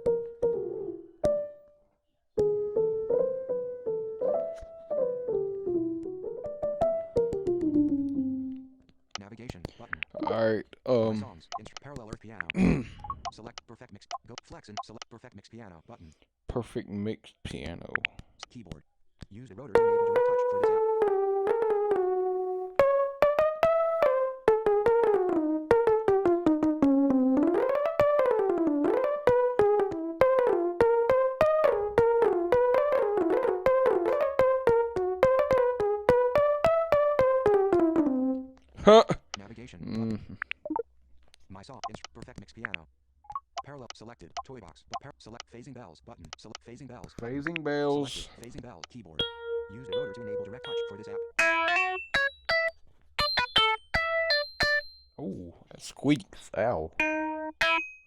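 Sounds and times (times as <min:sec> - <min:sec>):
electronic piano notes: 0:00.0 - 0:01.7, 0:02.4 - 0:08.8, 0:19.7 - 0:38.6, 0:49.2 - 0:54.9, 0:57.0 - 0:57.9.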